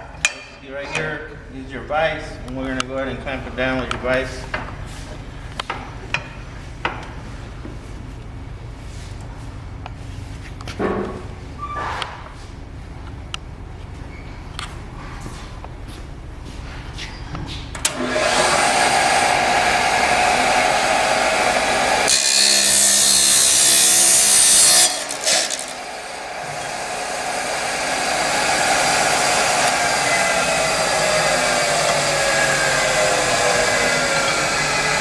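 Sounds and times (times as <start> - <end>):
chop saw motor humming: 17.8 - 35.0
saw grinding through steel pipe: 17.9 - 35.0.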